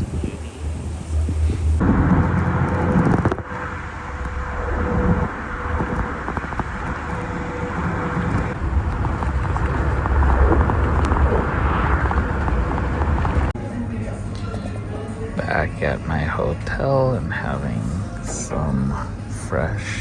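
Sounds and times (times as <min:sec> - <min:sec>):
vehicle engine rumble: 0:00.0 - 0:13.6
wind noise: 0:00.0 - 0:13.6.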